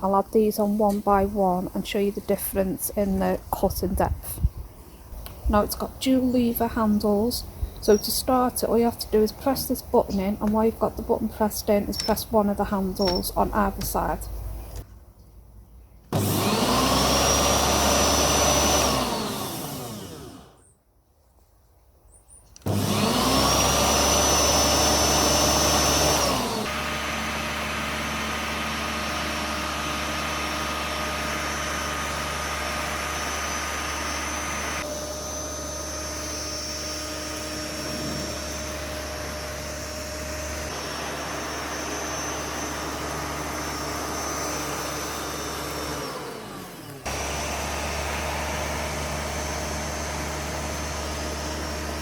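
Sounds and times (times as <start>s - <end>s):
electric lawn mower motor whining: 16.1s - 20.8s, 22.6s - 52.0s.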